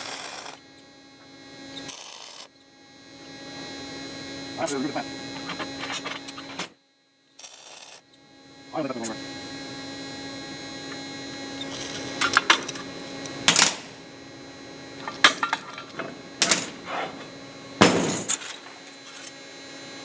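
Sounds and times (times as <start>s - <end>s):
steady shop hum: 0.0s - 20.0s
steel tools clanking: 11.6s - 14.0s, 15.0s - 19.4s.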